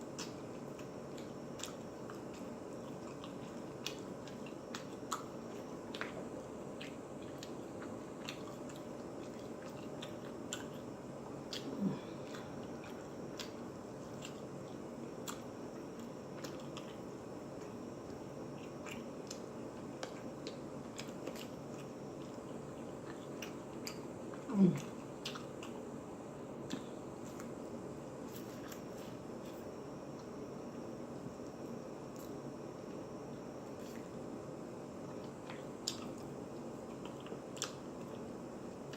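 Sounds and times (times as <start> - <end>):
person chewing with mouth clicks: 0.1 - 17.0, 17.6 - 25.8, 26.6 - 27.6, 32.1 - 32.4, 35.1 - 38.9.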